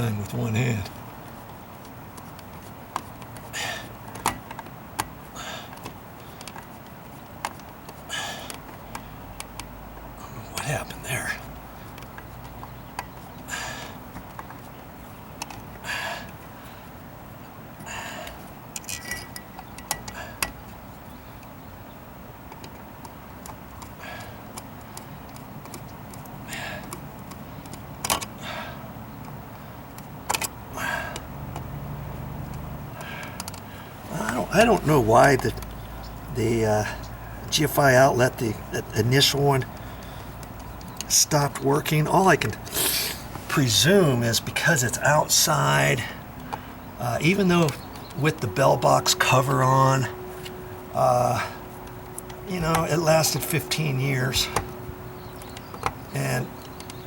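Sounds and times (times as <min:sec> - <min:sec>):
metallic clicks and clinks: 0:18.8 - 0:20.6
short breathy hisses: 0:42.7 - 0:43.3.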